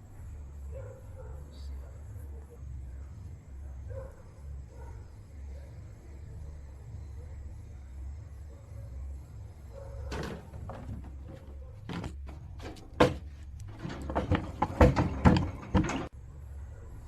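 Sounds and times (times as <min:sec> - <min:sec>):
knocks and bangs on a door: 0:10.1 - 0:16.1.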